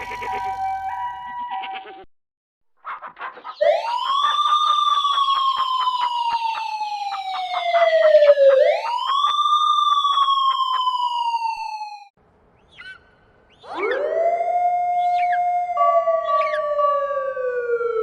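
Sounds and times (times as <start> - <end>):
emergency siren wailing: 0.0 - 1.8, 3.6 - 12.2, 13.6 - 18.0.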